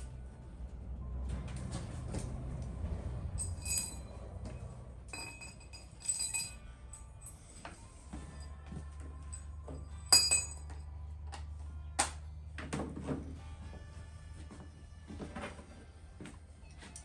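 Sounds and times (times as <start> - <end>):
low steady hum: 0.0 - 17.0
metal pieces clinking: 5.1 - 7.4.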